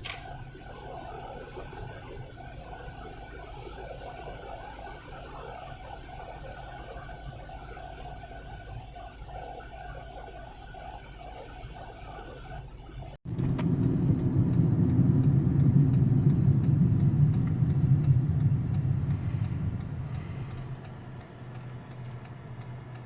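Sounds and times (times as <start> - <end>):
vehicle engine rumbling: 13.1 - 23.0
faint regular ticking: 13.6 - 23.0.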